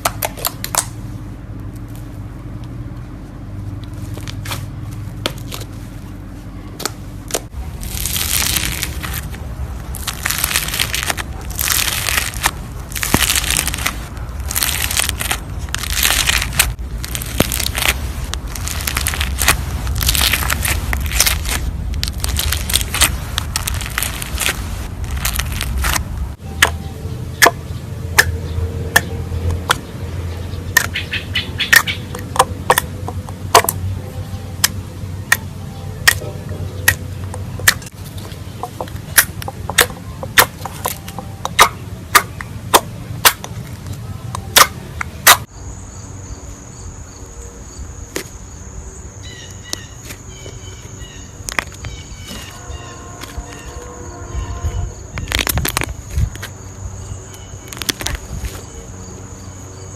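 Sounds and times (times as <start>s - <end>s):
low rumble: 0.9s - 30.8s.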